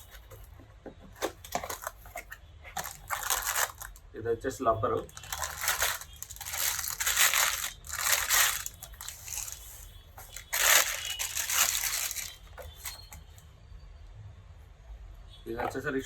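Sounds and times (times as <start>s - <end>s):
plastic packaging crinkling: 1.2s - 4.0s, 5.0s - 13.4s.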